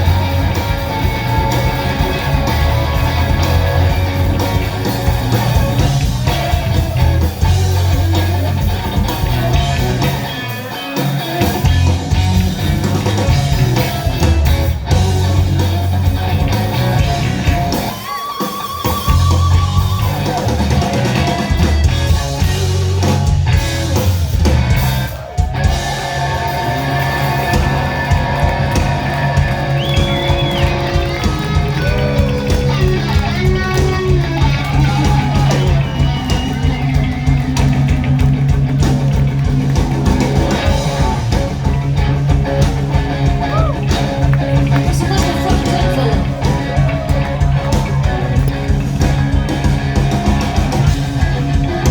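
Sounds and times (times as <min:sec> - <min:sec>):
electric guitar solo: 0:00.0 - 0:22.5, 0:40.1 - 0:51.9
bass and drums: 0:00.0 - 0:51.9.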